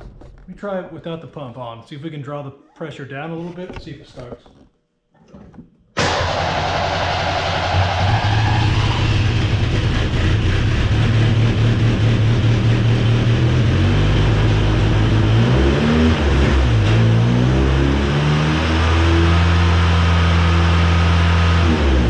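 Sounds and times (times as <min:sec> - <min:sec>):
car engine idling rough: 0:06.0 - 0:15.5.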